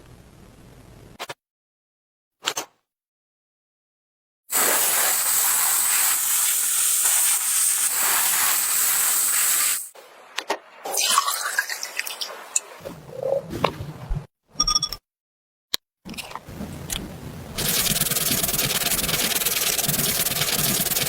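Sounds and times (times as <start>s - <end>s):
high-pressure spray hissing: 4.5s - 10.0s, 17.6s - 21.0s.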